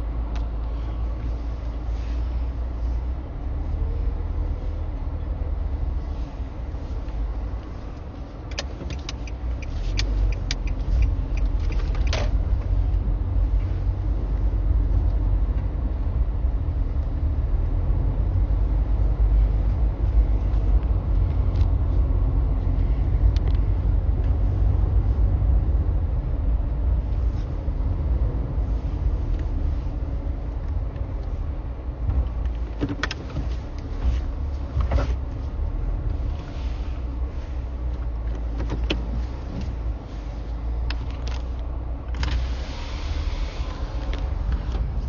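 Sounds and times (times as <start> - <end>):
car engine and road rumble: 0.0 - 45.0
hiss: 42.3 - 44.0.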